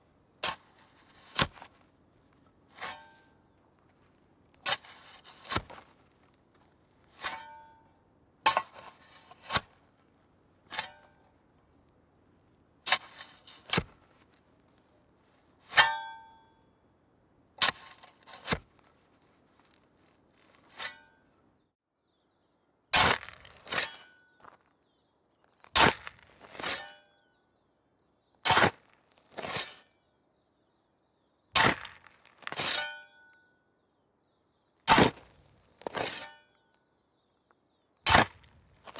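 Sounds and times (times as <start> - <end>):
metal spade digging into ground: 0.4 - 1.7, 2.7 - 3.4, 4.6 - 6.0, 7.2 - 7.8, 8.5 - 9.8, 10.7 - 11.3, 12.8 - 14.1, 15.6 - 16.4, 17.6 - 18.8, 20.4 - 21.2, 23.0 - 24.6, 25.8 - 27.0, 28.5 - 29.9, 31.6 - 33.2, 34.9 - 36.5, 38.1 - 38.9.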